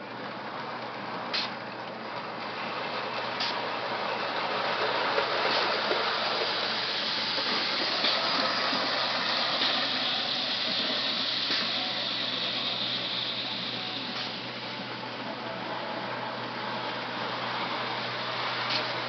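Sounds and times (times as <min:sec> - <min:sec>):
steam hiss: 0:04.6 - 0:14.7.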